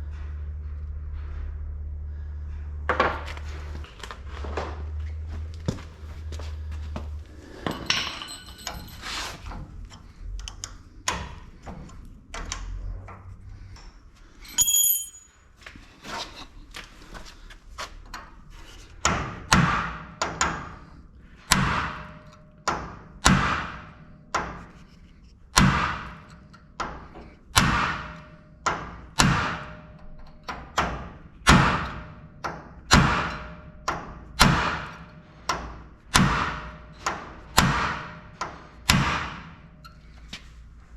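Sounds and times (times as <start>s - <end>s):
ringing metal clank: 7.6s - 9.4s, 14.5s - 15.4s.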